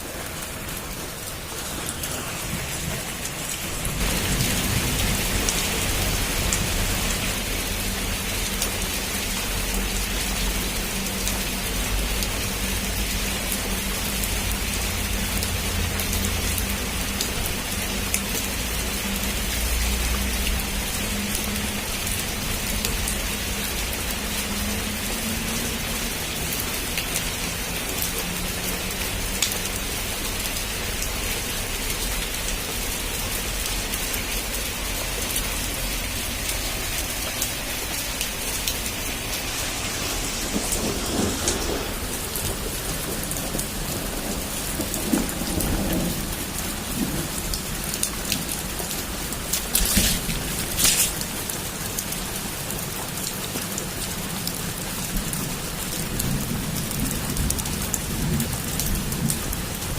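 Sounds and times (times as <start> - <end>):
heavy rain: 0.0 - 59.9
thunder rumbling: 1.4 - 7.6, 37.1 - 51.3.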